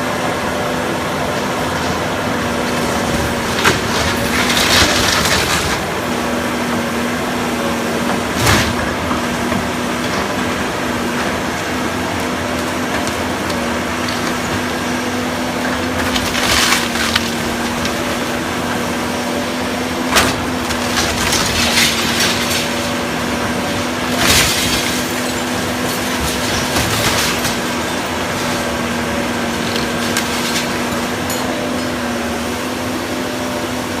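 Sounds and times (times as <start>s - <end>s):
wood cracking and splintering: 2.6s - 6.1s, 8.2s - 32.0s.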